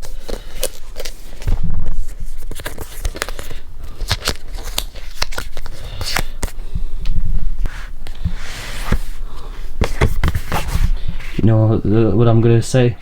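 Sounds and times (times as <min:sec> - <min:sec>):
cardboard packaging crackling: 0:00.0 - 0:06.6.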